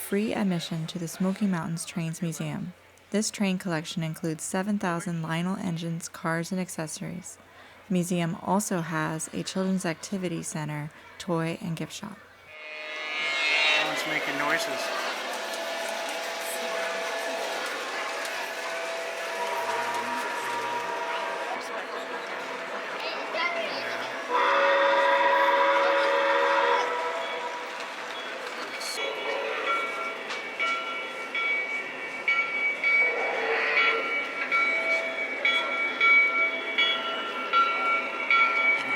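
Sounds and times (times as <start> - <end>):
higher motor whine: 12.5 - 21.8
model train motor whine: 12.5 - 22.6.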